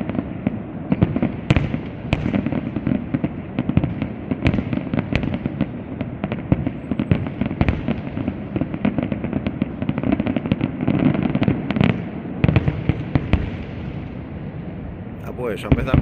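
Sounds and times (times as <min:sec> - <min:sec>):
fireworks bangs and crackles: 0:00.0 - 0:16.0.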